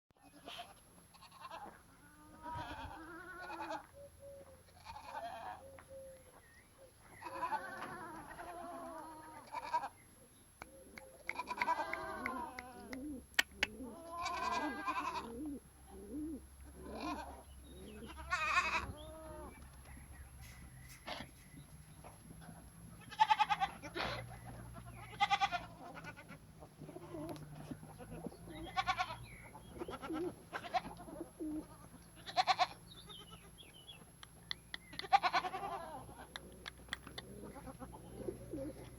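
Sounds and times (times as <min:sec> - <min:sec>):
goats bleating: 0:00.3 - 0:03.9, 0:04.7 - 0:05.6, 0:07.2 - 0:10.0, 0:11.3 - 0:13.0, 0:13.9 - 0:15.3, 0:16.8 - 0:19.5, 0:23.0 - 0:33.7, 0:35.0 - 0:36.3
sharp click: 0:13.4 - 0:13.7.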